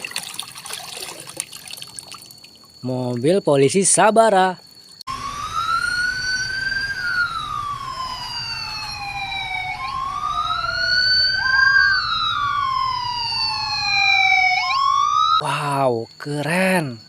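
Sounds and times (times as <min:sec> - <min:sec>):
police siren wailing: 0:05.1 - 0:15.4
second siren wail: 0:05.1 - 0:15.4.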